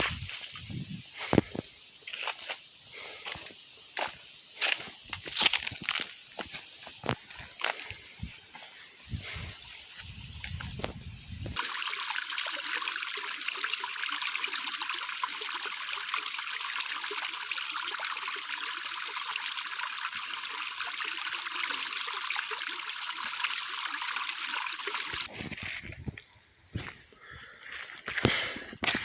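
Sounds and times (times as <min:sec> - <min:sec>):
stream water trickling: 0:07.0 - 0:26.1.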